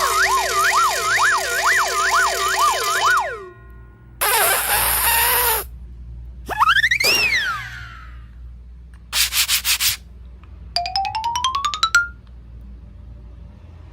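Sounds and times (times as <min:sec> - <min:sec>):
cartoon rattle: 0:04.2 - 0:05.7
cartoon whistle slide: 0:04.2 - 0:05.7, 0:06.5 - 0:08.1.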